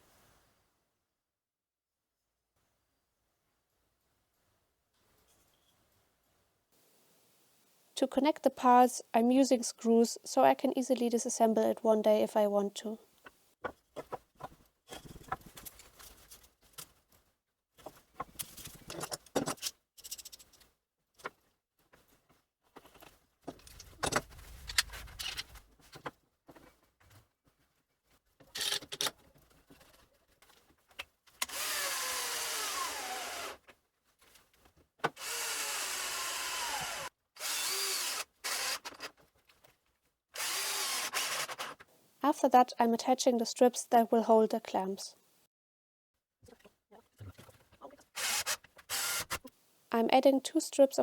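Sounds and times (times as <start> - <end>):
power drill driving screws: 31.4 - 33.6, 35.1 - 39.1, 40.4 - 41.8, 48.2 - 49.4.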